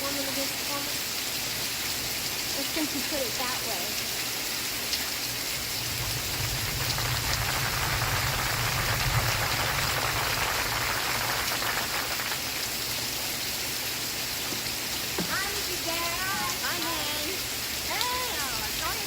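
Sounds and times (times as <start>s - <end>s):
steady rain falling: 0.0s - 19.0s
low rumble: 5.6s - 12.4s.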